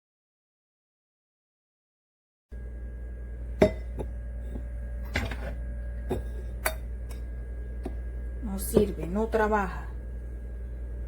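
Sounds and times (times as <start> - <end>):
steady low hum: 2.5 - 11.0
dishes and glass clinking: 3.6 - 4.2, 5.1 - 7.2.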